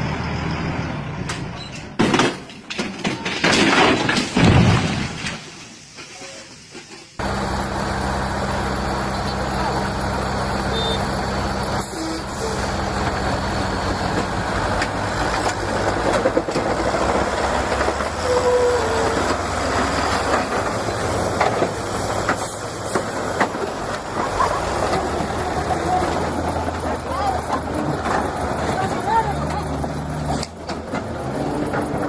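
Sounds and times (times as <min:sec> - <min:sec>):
rattling rumble with knocks: 0:01.3 - 0:06.0, 0:11.2 - 0:32.0
low engine hum: 0:07.2 - 0:32.0.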